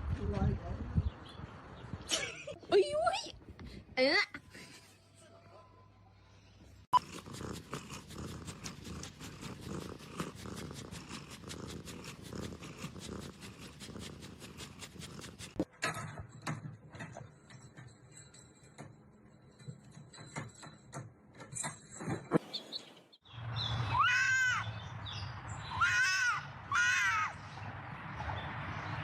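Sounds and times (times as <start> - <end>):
cat purring: 7.0 - 15.6.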